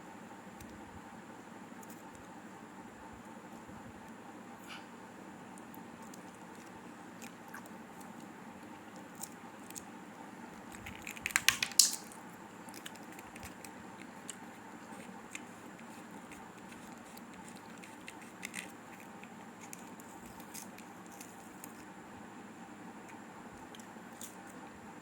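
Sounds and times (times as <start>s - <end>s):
packaging crinkling: 10.5s - 21.9s
light clicks of packaging: 10.6s - 14.4s.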